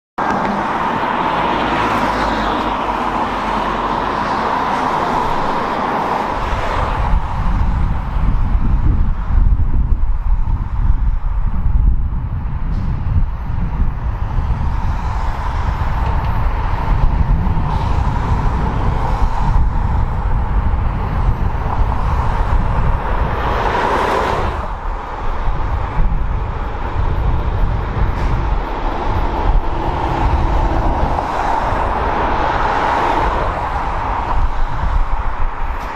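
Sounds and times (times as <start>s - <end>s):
passing vehicles rushing: 0.2s - 35.9s
deep low rumble: 6.6s - 32.5s.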